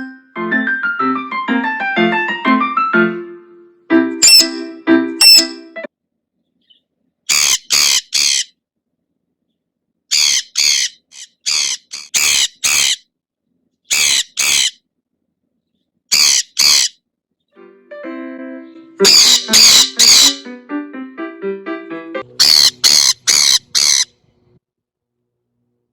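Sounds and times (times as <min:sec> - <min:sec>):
piano music: 0:00.0 - 0:05.9, 0:17.6 - 0:22.9
parrot screeching: 0:07.3 - 0:08.5, 0:10.1 - 0:13.0, 0:13.9 - 0:14.8, 0:16.1 - 0:16.9, 0:19.1 - 0:20.4, 0:22.4 - 0:24.1.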